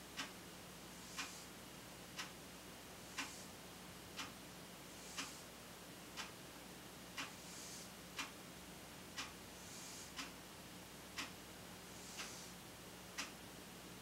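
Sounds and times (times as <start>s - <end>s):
low steady hum: 0.0s - 14.0s
room hiss: 0.0s - 14.0s
clock ticking: 0.2s - 0.4s, 1.1s - 1.4s, 2.2s - 2.4s, 3.1s - 3.4s, 4.2s - 4.4s, 5.1s - 5.4s, 6.2s - 6.4s, 7.2s - 7.4s, 8.2s - 8.4s, 9.2s - 9.4s, 10.1s - 10.4s, 11.2s - 11.4s, 13.2s - 13.4s.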